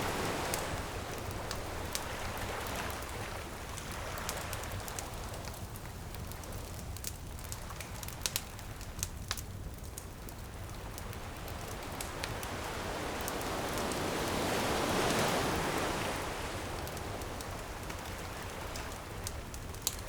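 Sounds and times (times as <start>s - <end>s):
surf waves washing in: 0.0s - 5.4s, 11.1s - 19.6s
bonfire crackling and popping: 0.0s - 15.4s, 16.1s - 20.0s.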